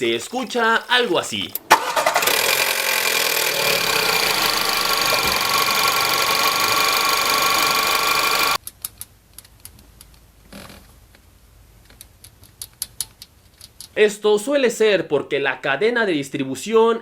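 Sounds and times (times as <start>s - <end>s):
car engine rattling: 0.0s - 8.6s.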